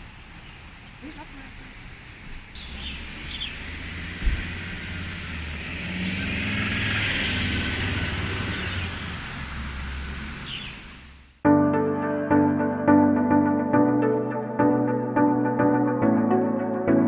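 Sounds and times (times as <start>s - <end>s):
low vehicle rumble: 0.0s - 17.0s
bird chirp: 2.5s - 3.7s, 8.4s - 9.0s, 10.4s - 10.9s.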